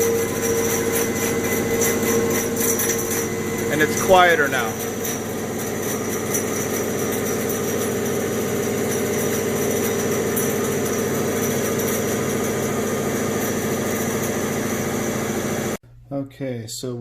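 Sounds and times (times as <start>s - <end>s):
bandsaw running: 0.0s - 15.8s.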